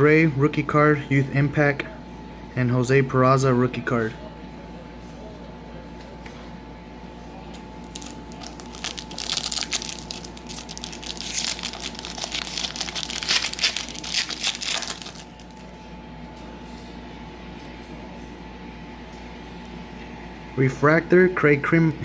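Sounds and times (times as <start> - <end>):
foil wrapper crinkling and tearing: 7.5 - 15.7.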